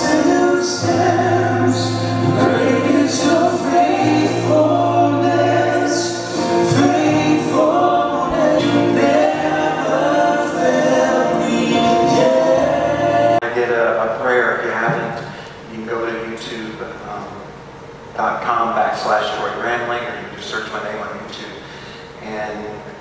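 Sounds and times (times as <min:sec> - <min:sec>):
choir singing: 0:00.0 - 0:13.6
band playing gospel song: 0:00.0 - 0:14.1.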